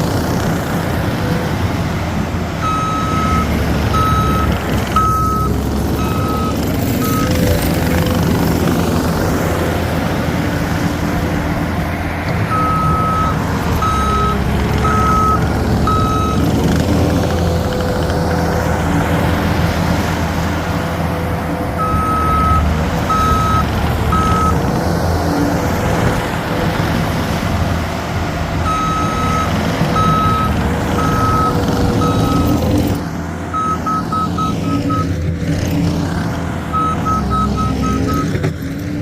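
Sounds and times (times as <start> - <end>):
diesel engine whining: 0.0 - 39.0
backup alarm beeping: 2.6 - 7.4, 28.7 - 32.5.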